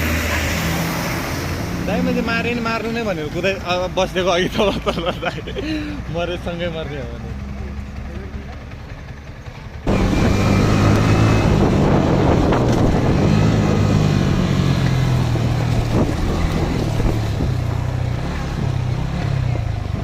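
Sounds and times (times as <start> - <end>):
motorcycle engine running: 5.9 - 20.0
wind noise on microphone: 9.9 - 18.0.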